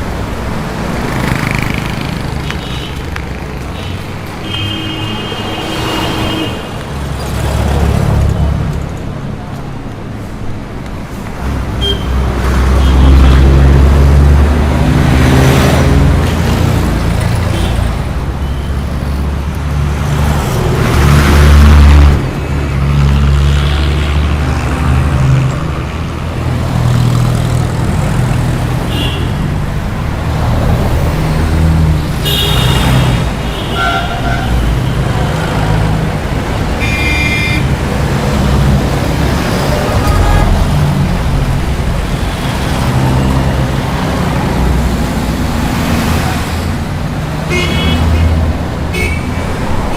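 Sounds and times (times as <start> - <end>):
traffic engine rumble: 0.0 - 49.9
vehicles swooshing past: 37.7 - 49.9
short horn toots: 39.7 - 40.9.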